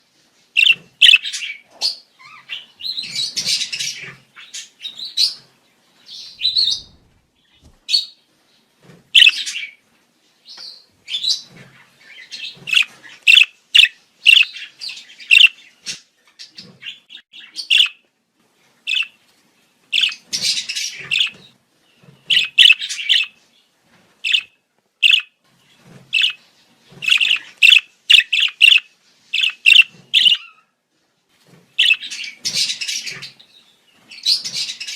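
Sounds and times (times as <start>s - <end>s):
budgerigars chirping and warbling: 0.6s - 5.5s, 6.1s - 8.2s, 9.2s - 9.8s, 10.6s - 18.0s, 18.9s - 19.2s, 20.0s - 21.5s, 22.2s - 23.4s, 24.2s - 25.3s, 26.1s - 30.6s, 31.8s - 34.9s.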